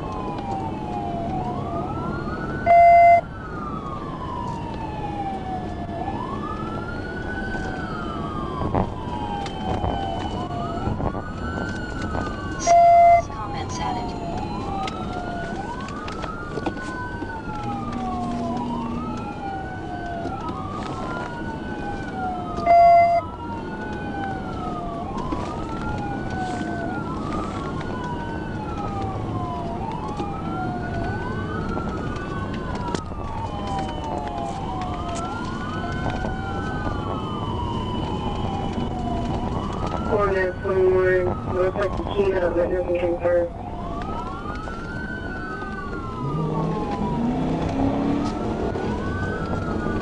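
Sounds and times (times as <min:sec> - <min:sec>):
engine and road noise: 0:00.0 - 0:50.0
police siren wailing: 0:00.0 - 0:50.0
short loud beep: 0:02.7 - 0:03.2, 0:12.6 - 0:13.2.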